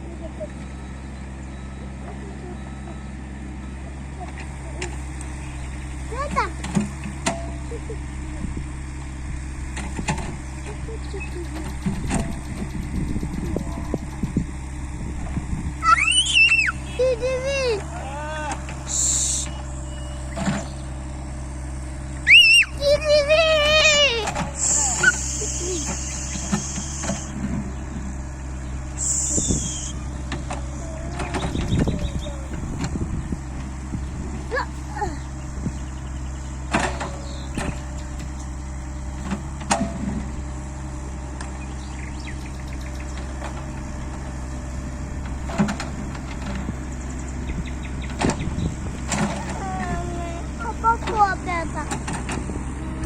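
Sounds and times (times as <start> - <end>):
excavator engine running: 0.0 - 53.0
short squeaks: 15.8 - 17.0, 24.2 - 27.4, 29.0 - 33.0.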